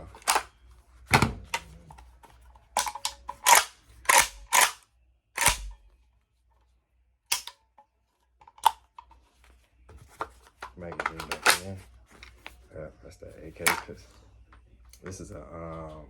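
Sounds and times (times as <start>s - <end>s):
metallic clacks of pistol action: 2.8s - 4.8s, 5.4s - 5.8s, 7.3s - 7.6s.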